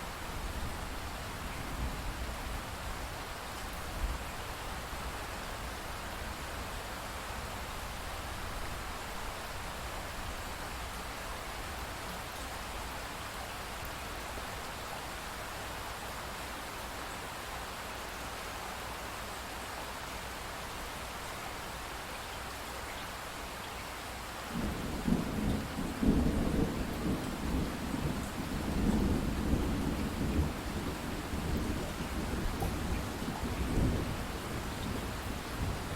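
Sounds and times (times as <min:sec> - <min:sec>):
steady rainfall: 0:00.0 - 0:35.9
deep rumble of thunder: 0:24.5 - 0:35.9.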